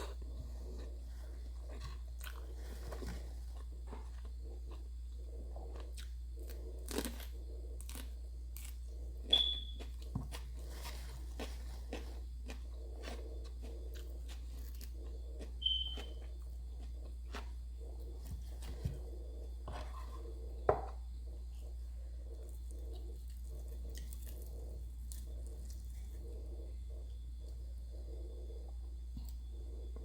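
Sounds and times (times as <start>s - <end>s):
person chewing and crunching food: 0.0s - 30.0s.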